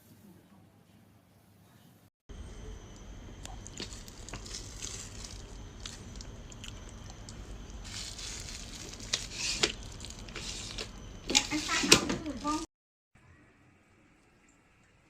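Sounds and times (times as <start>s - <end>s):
suitcase rustling and scraping: 7.8s - 12.6s.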